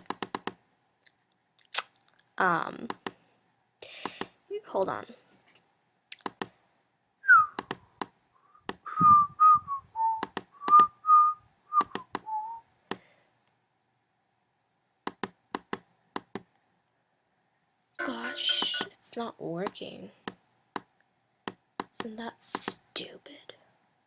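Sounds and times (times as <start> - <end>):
person whistling: 7.3 - 7.6, 8.4 - 12.6
computer mouse clicks: 15.0 - 16.5.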